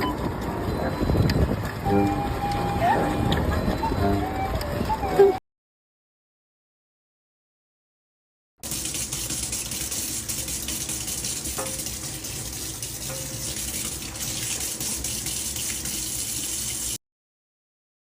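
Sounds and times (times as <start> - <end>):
running water: 0.0 - 5.4, 8.6 - 17.0.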